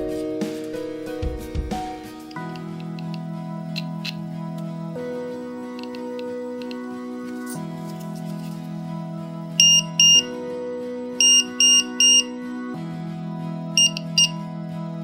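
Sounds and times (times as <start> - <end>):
background music: 0.0 - 15.0
high-pitched buzzer beeps: 9.6 - 10.3, 11.2 - 12.4, 13.8 - 14.4.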